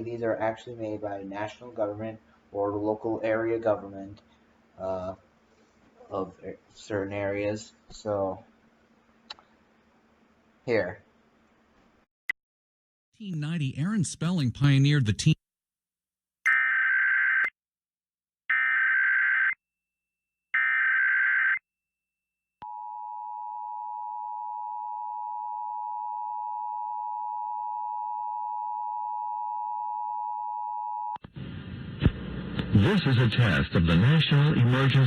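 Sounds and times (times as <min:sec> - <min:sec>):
person speaking: 0:13.2 - 0:15.4.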